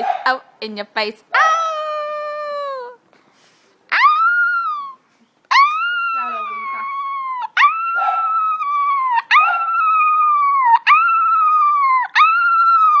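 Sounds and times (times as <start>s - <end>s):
dog howling: 4.0s - 13.0s.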